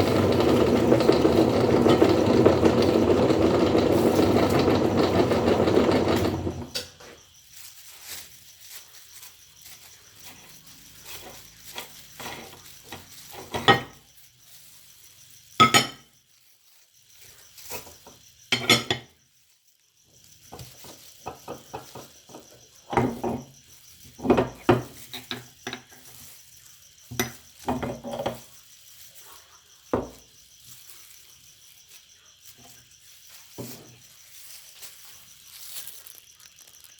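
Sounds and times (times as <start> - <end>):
kitchenware knocking and clinking: 0.0 - 7.1, 13.3 - 14.0, 15.6 - 16.1, 18.5 - 19.1, 20.8 - 23.5, 24.2 - 26.1, 27.1 - 28.4, 29.9 - 30.2.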